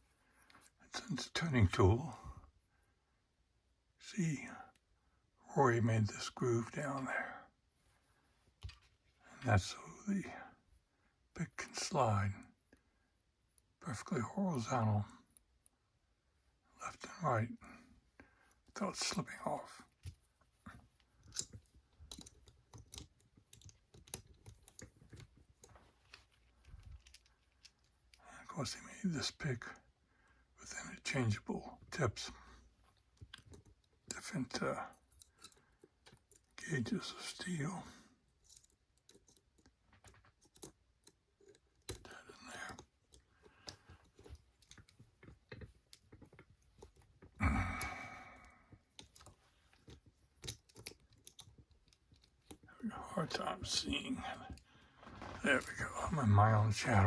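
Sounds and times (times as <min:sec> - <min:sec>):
lock-picking tools clicking and scraping: 0:19.9 - 0:28.2, 0:32.4 - 0:36.8, 0:37.4 - 0:55.9.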